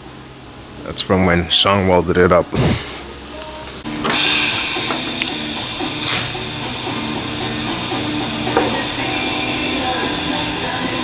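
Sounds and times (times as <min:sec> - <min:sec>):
steady hiss: 0:00.1 - 0:11.0
background music: 0:03.4 - 0:11.0.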